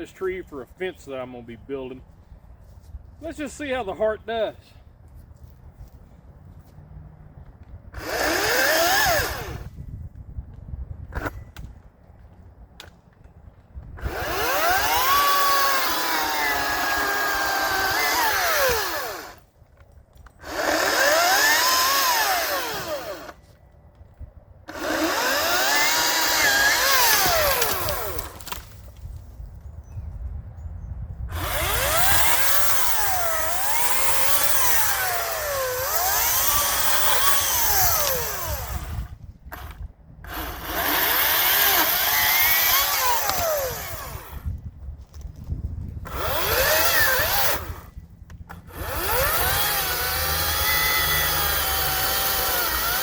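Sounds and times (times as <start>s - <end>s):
chainsaw cutting wood: 7.9s - 9.7s, 14.0s - 19.5s, 20.4s - 23.6s, 24.7s - 28.9s, 31.3s - 44.5s, 46.0s - 53.0s.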